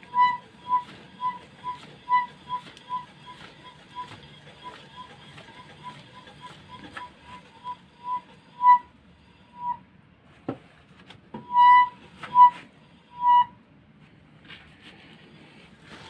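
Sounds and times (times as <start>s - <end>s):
wheel squeaking: 0.0s - 9.8s, 11.4s - 13.5s, 15.4s - 16.0s.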